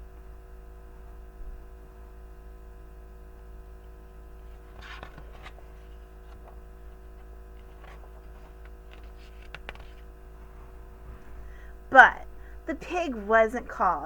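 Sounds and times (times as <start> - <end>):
low electrical hum: 0.0 - 14.0
book pages rustling: 4.5 - 11.5.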